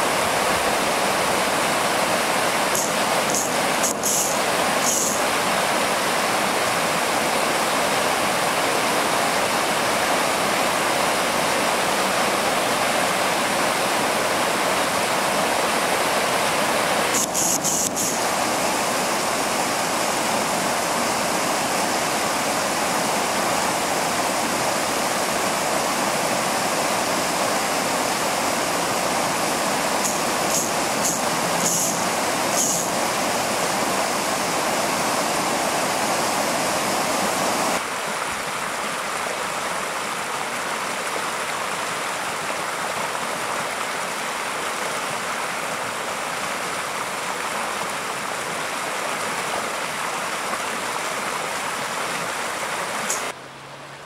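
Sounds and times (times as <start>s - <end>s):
steady rushing noise: 13.4s - 37.9s.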